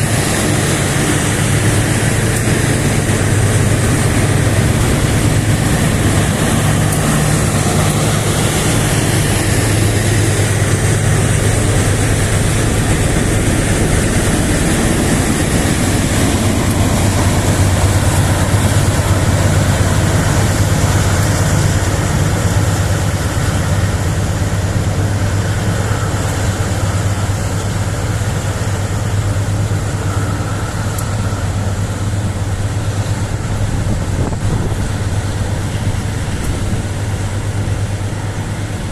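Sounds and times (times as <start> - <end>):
freight train rumbling past: 0.0 - 38.9.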